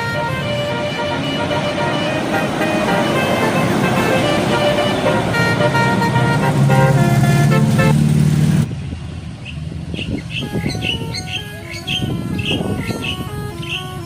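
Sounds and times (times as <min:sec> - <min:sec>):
air horn playing a melody: 0:00.0 - 0:08.1, 0:10.4 - 0:14.0
short high chirping notes: 0:10.2 - 0:14.0.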